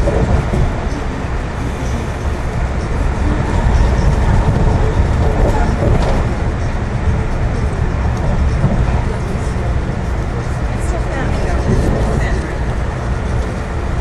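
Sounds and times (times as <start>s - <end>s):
train wheels rumbling on rails: 0.0s - 14.0s.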